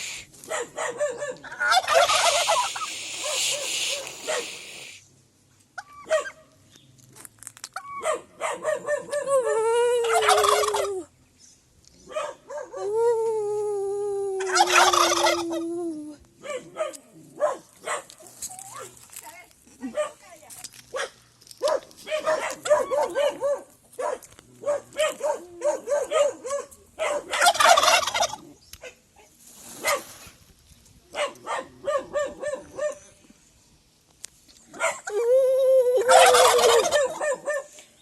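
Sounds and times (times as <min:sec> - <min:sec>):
turkeys gobbling: 0:01.0 - 0:04.6, 0:10.0 - 0:11.0, 0:14.4 - 0:15.6, 0:27.3 - 0:28.5, 0:36.0 - 0:37.4.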